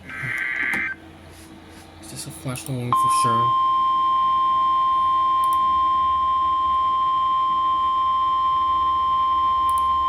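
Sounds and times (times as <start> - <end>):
steady high alarm tone: 2.9 - 10.0.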